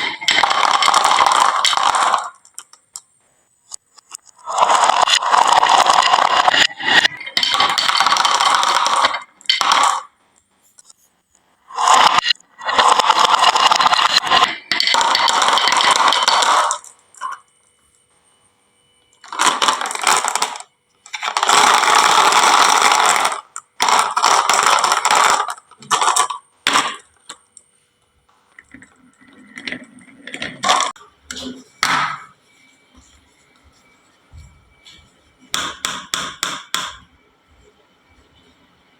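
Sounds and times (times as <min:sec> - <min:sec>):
marbles rattling down wooden run: 0:00.0 - 0:02.4, 0:04.4 - 0:10.1, 0:11.8 - 0:16.9, 0:19.3 - 0:27.0, 0:29.6 - 0:31.0.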